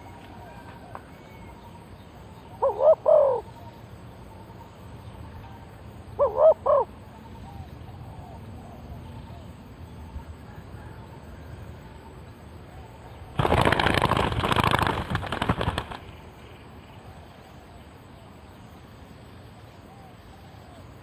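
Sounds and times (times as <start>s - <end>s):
dove wings flapping: 13.3s - 16.4s.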